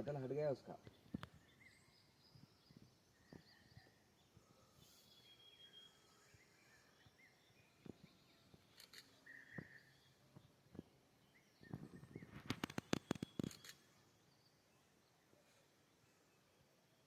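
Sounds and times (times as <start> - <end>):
faint bird calls: 0.8 - 10.4, 11.3 - 14.0.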